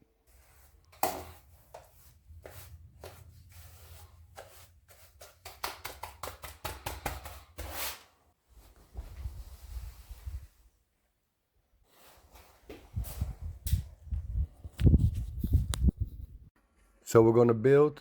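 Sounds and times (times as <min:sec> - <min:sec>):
scratchy brush strokes: 0:00.2 - 0:10.6.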